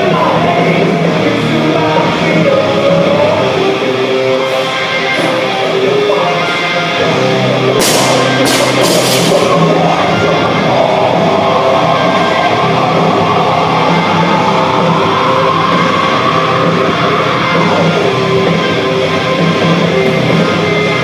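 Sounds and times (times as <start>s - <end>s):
rock music with singing: 0.0s - 21.0s
short bright crashes: 7.8s - 9.6s.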